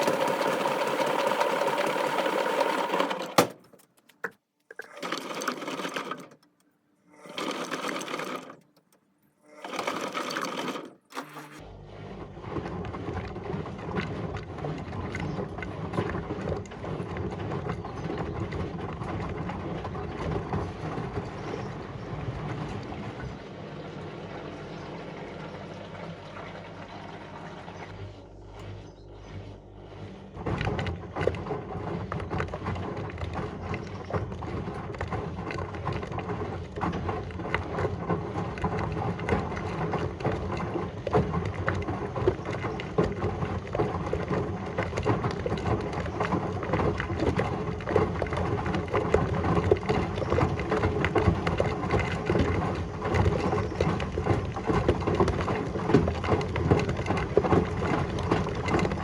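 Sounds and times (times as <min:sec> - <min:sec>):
washing machine hum: 0:00.0 - 0:59.0
water sloshing: 0:30.3 - 0:59.0
knocks and rattles in drum: 0:34.1 - 0:59.0.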